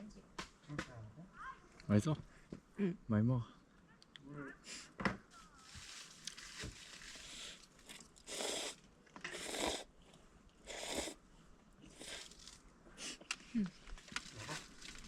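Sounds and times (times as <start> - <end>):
person slurping noodles: 7.1 - 9.9, 10.6 - 11.2, 11.9 - 13.2.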